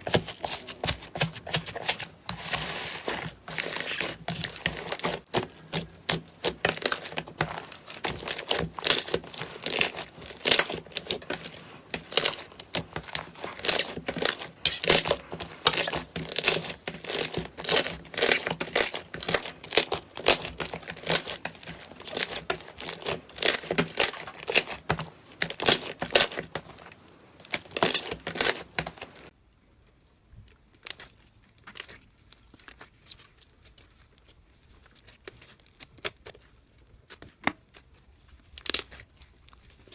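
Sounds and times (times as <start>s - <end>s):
slime squeezed by hand crackling: 0.0s - 29.3s.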